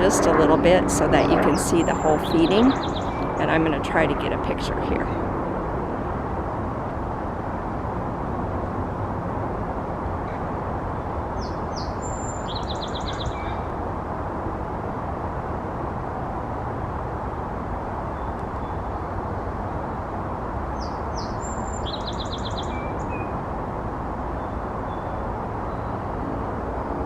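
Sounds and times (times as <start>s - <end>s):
outdoor background noise: 0.0s - 27.0s
bird chirping and trilling: 1.2s - 3.5s, 11.4s - 13.7s, 20.8s - 23.3s.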